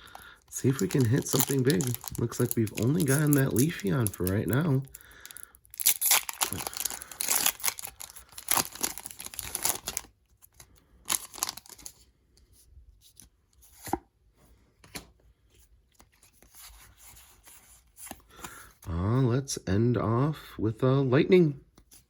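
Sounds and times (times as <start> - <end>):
foil wrapper tearing and crinkling: 0.0 - 10.1, 11.1 - 11.9
cards rustling and clicking: 0.0 - 14.0.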